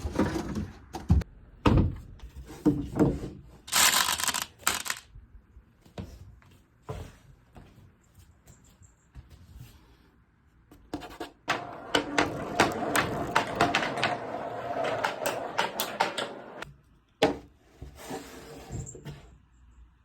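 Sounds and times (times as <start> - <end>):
marbles rolling and clattering: 3.7 - 5.1, 11.5 - 16.6.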